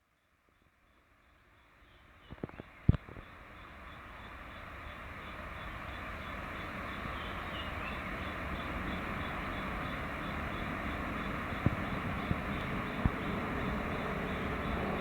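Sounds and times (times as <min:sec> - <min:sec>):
jet engines roaring: 0:09.9 - 0:15.0.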